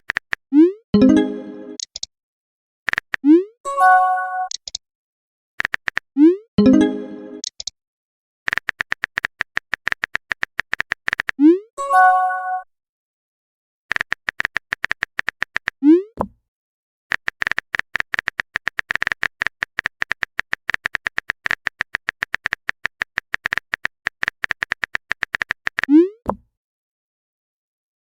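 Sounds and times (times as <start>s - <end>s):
phone keyboard typing clicks: 0.0s - 0.4s, 1.8s - 2.1s, 2.9s - 3.3s, 4.4s - 4.8s, 5.6s - 6.1s, 7.4s - 7.7s, 8.5s - 11.4s, 13.9s - 15.8s, 17.1s - 26.4s.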